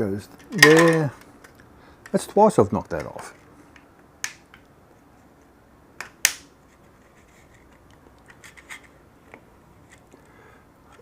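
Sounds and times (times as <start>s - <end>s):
plastic parts clicking: 0.3s - 2.2s
plastic parts scraping: 6.6s - 10.3s.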